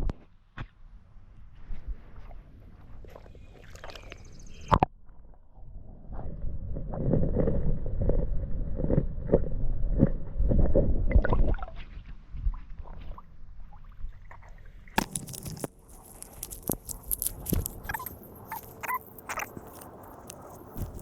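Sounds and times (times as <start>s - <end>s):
water squishing and sloshing: 2.0s - 4.6s, 11.2s - 21.0s
sharp rustle: 15.0s - 21.0s
soft thumps: 20.6s - 21.0s.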